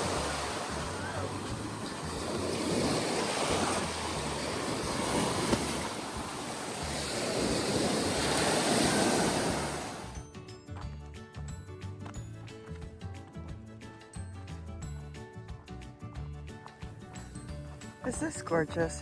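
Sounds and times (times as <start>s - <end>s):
ocean surf breaking: 0.0s - 10.2s
wind blowing across microphone: 0.0s - 10.2s
music: 0.0s - 19.0s.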